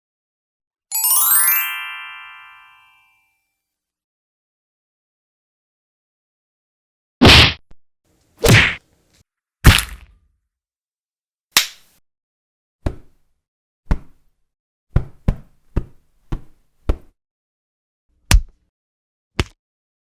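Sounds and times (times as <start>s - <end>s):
punch sound effects: 7.2s - 7.6s, 8.4s - 8.8s, 9.7s - 10.2s.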